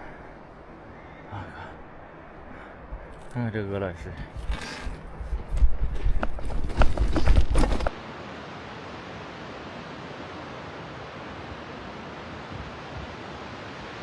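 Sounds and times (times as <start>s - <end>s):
wind rumbling on microphone: 4.0s - 8.0s.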